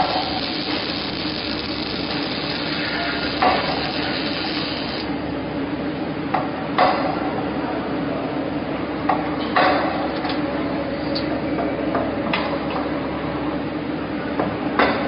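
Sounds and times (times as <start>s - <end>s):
welding arc sizzling: 0.0s - 5.2s
steady machine hum: 0.0s - 15.0s.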